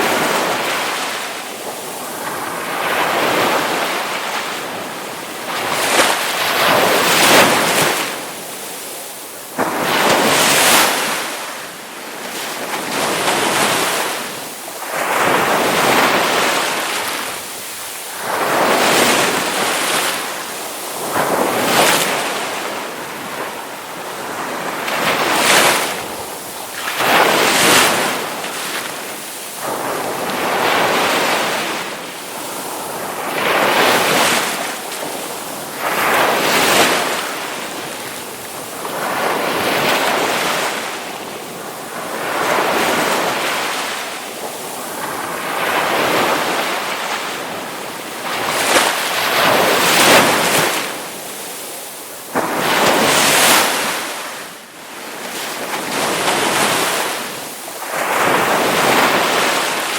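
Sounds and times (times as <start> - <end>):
ocean waves crashing: 0.0 - 59.9.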